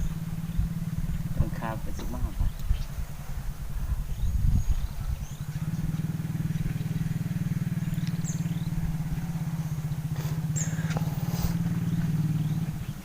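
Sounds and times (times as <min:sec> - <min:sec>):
small engine droning: 0:00.0 - 0:13.0
high bird chirps: 0:04.1 - 0:13.0.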